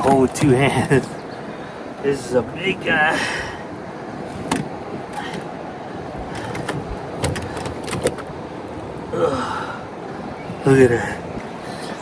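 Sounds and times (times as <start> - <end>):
rushing water: 0.0 - 12.0
wind: 0.0 - 12.0.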